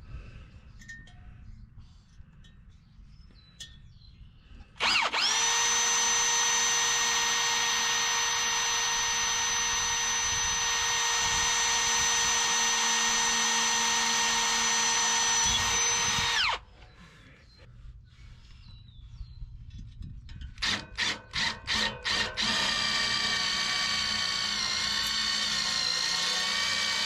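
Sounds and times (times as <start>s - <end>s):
electric drill whining: 4.8s - 16.6s, 20.6s - 27.0s.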